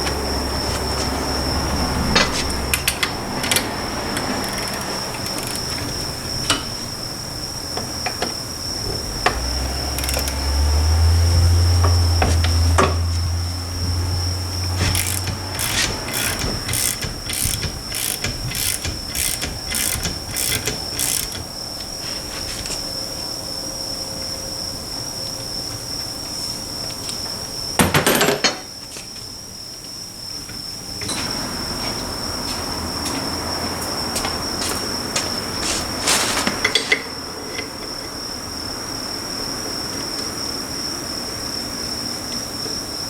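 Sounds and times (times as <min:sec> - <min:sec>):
insect chirring: 0:00.1 - 0:24.7
sharp metallic taps: 0:14.8 - 0:21.5.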